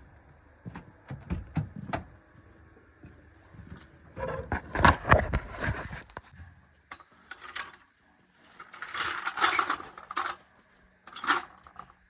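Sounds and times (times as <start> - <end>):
metal clattering: 8.6 - 10.4, 11.1 - 11.9.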